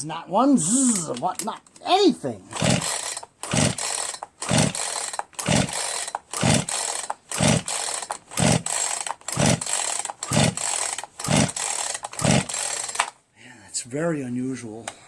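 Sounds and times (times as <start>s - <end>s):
chainsaw pull starter cranking: 2.5s - 13.2s.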